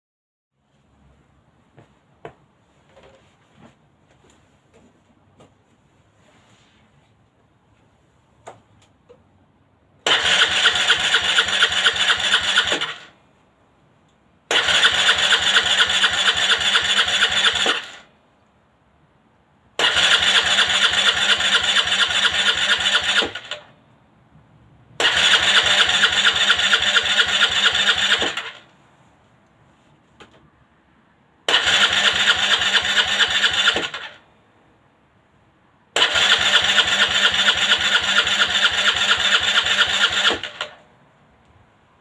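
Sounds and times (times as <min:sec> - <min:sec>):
scooter engine cranking: 0:10.0 - 0:13.1, 0:14.5 - 0:18.1, 0:19.8 - 0:23.7, 0:25.0 - 0:28.6, 0:31.5 - 0:34.2, 0:36.0 - 0:40.8.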